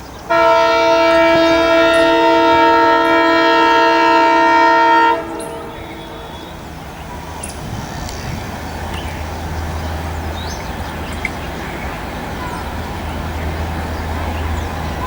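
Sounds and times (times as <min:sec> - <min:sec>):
locomotive rumbling: 0:00.0 - 0:15.0.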